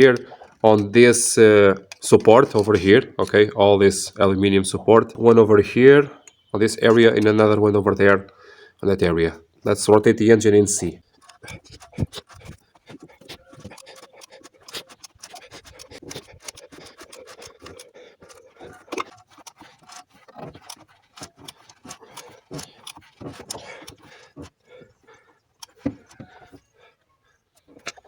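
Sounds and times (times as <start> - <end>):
wrench clicking and scraping on metal: 0.0 - 3.4, 10.7 - 24.6, 25.6 - 26.6.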